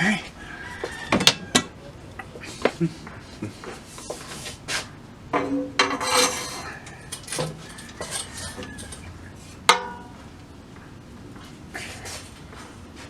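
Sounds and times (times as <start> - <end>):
metal tools clinking and clanking: 5.4 - 10.1.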